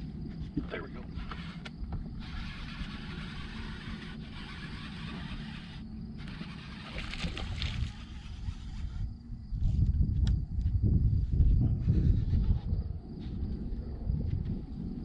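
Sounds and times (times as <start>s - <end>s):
fishing reel whirring: 1.2s - 9.1s.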